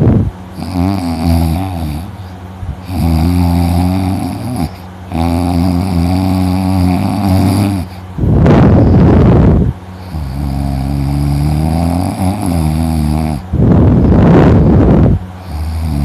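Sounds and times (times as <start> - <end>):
man snoring loudly: 0.5 - 8.0, 10.0 - 13.5, 14.7 - 16.0.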